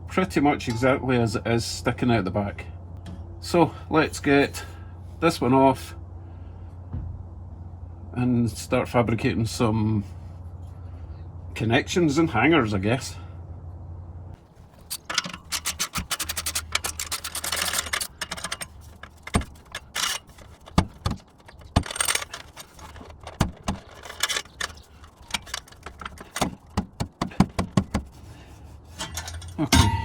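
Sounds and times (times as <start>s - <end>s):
metallic clinks of tools: 14.8s - 26.7s, 29.0s - 30.0s
ratchet wrench clicking: 14.8s - 28.0s.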